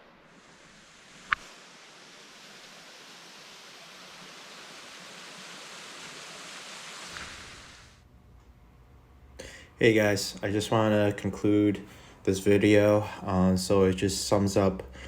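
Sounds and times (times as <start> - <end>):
waterfall rushing: 0.0 - 8.0
sharp click: 1.3 - 1.5.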